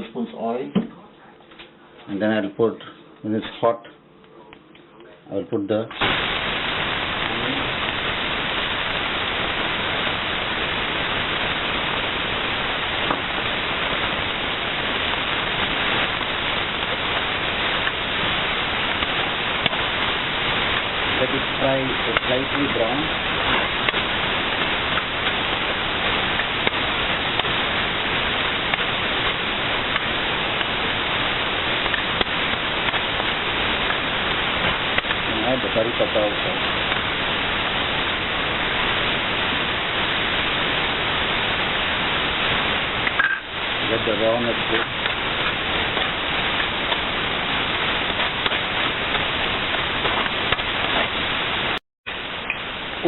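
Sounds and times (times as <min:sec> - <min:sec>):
onion sizzling in oil: 0:05.9 - 0:53.0
small crackles and pops: 0:05.9 - 0:53.0.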